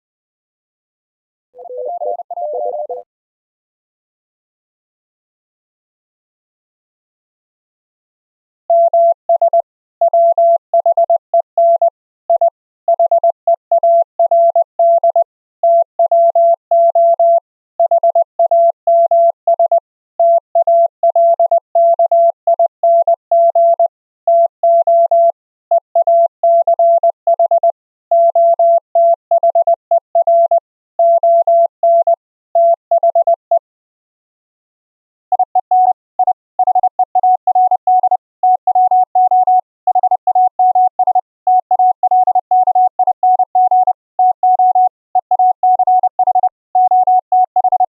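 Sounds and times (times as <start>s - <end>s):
higher-pitched morse code tone: 1.6s - 3.0s, 35.3s - 47.9s
morse code sine tone: 1.6s - 3.1s, 35.3s - 47.9s.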